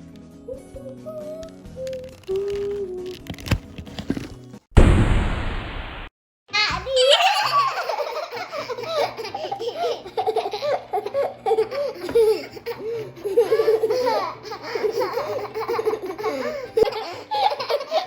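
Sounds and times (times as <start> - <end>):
young child giggling: 6.9 - 18.0.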